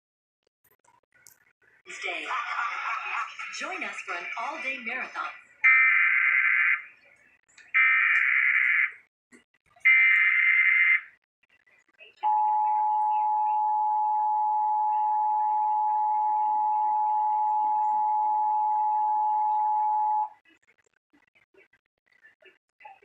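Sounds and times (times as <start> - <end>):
two-tone attention signal: 12.2 - 20.4.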